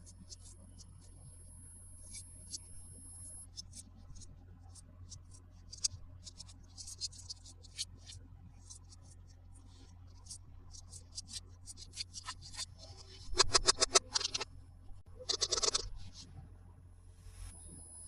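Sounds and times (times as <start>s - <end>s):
plastic toy clicks and crinkles: 15.3s - 15.9s.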